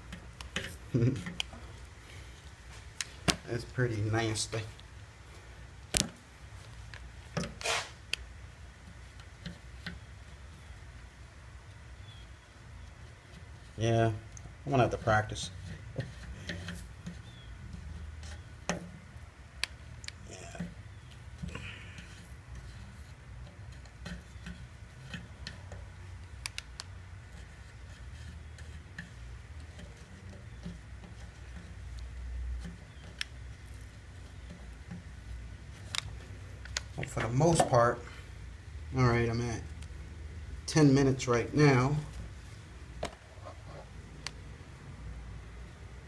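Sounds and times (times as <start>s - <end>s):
steady low hum: 0.0s - 46.0s
short metal scrape: 7.6s - 8.0s
light metallic taps and clicks: 23.4s - 26.9s.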